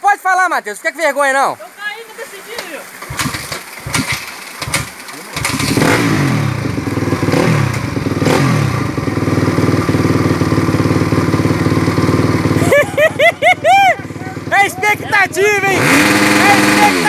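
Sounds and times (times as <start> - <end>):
dirt bike engine revving: 2.6 - 17.0
knocks and clatter: 3.0 - 5.8.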